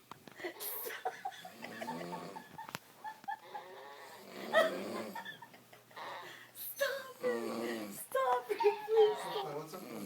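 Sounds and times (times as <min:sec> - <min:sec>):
high squeaky snoring voice: 0:08.6 - 0:10.0.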